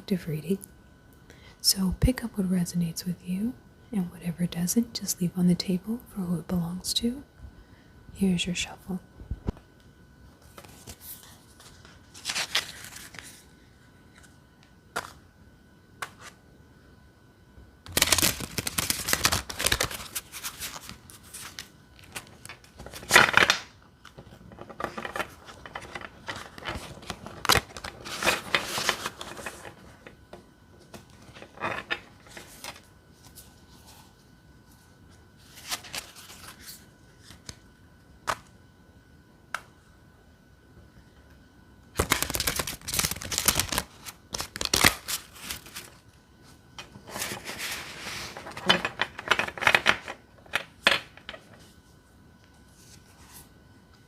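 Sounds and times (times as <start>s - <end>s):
cards being shuffled: 10.4s - 13.4s, 17.9s - 30.1s, 35.4s - 37.6s, 42.0s - 46.0s.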